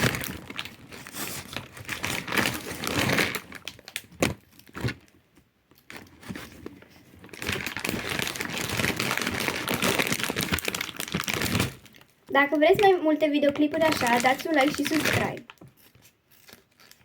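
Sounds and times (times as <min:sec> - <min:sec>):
paper crinkling and rustling: 0:00.0 - 0:17.0.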